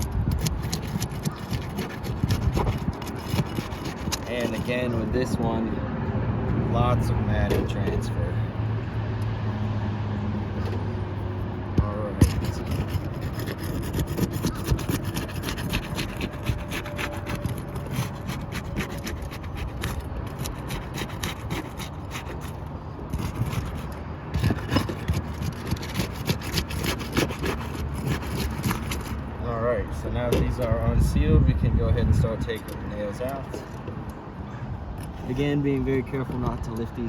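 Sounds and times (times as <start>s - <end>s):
shingles rasping and tearing: 0.0s - 5.4s, 10.4s - 29.4s.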